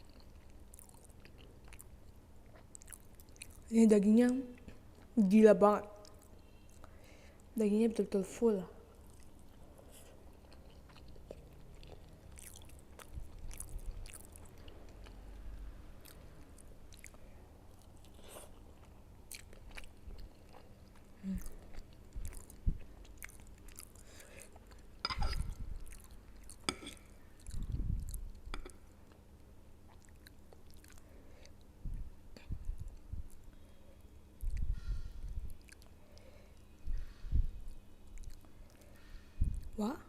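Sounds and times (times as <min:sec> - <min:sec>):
close chewing: 0:09.0 - 0:15.3, 0:16.0 - 0:29.2.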